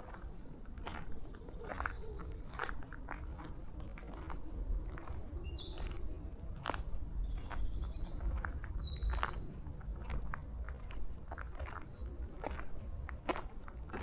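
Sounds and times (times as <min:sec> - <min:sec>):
faint footsteps on path: 0:00.0 - 0:14.0
songbird singing trills: 0:01.3 - 0:09.9.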